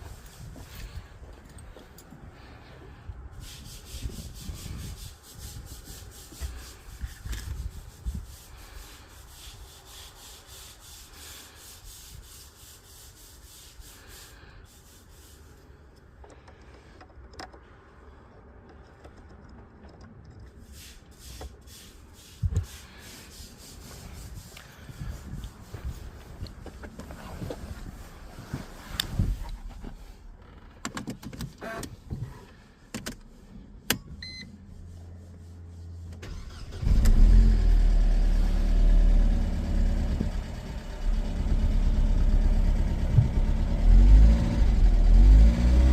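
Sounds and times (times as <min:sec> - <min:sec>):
rubbing and scraping handling noise: 0:00.0 - 0:36.6.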